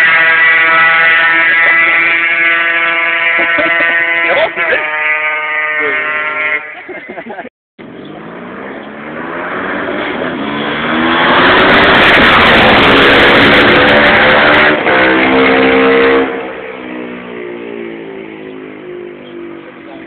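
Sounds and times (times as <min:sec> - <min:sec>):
motorcycle engine revving: 0:07.8 - 0:20.0.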